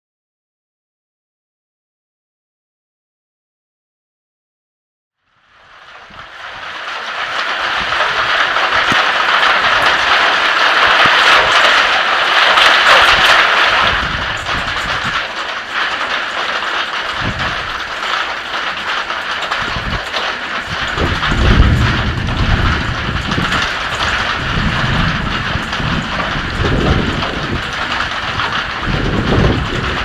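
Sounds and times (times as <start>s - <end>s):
heavy rain pouring: 5.5s - 30.0s
low thunder rumbles: 6.0s - 30.0s.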